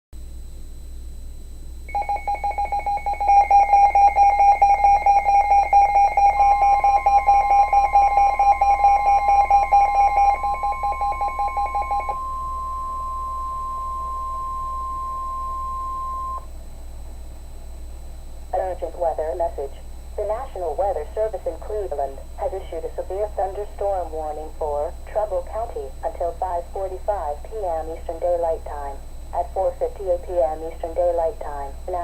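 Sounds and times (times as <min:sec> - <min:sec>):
steady alarm tone: 0:01.4 - 0:16.6.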